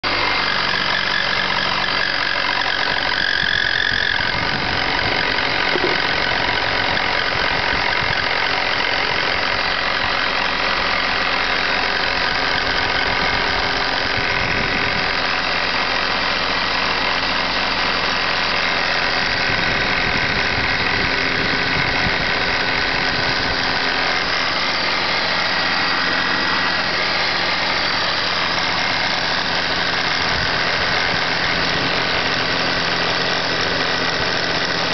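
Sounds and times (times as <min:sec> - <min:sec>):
car engine idling: 0:00.0 - 0:34.9
belt drive knocking: 0:05.6 - 0:06.6.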